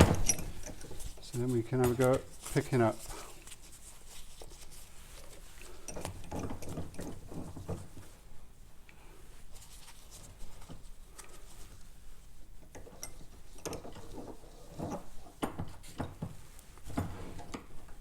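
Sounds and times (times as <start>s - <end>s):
rustling: 0.0s - 8.4s, 9.0s - 12.6s
small metal clicks and knocks: 5.8s - 7.9s, 12.6s - 18.0s.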